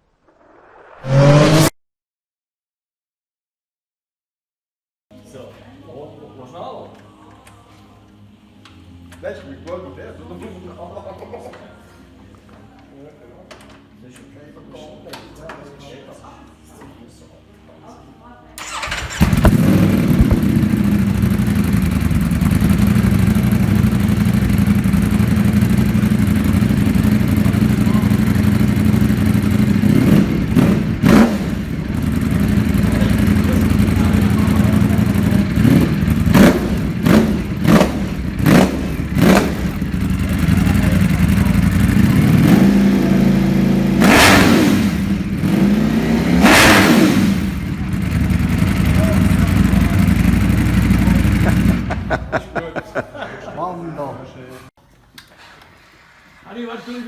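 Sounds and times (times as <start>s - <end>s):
motorcycle engine idling and revving: 18.6s - 52.4s.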